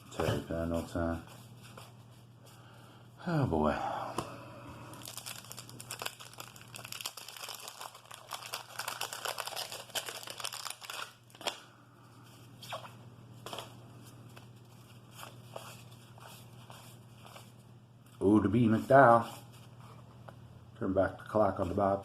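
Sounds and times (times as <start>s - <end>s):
wax paper wrapper crinkling and tearing: 4.9s - 11.6s.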